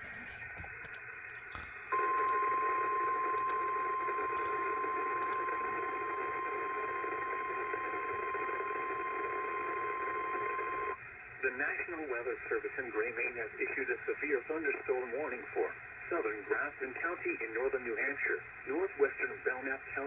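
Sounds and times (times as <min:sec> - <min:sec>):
steady alarm tone: 0:01.9 - 0:11.0
radio static hiss: 0:02.8 - 0:20.0.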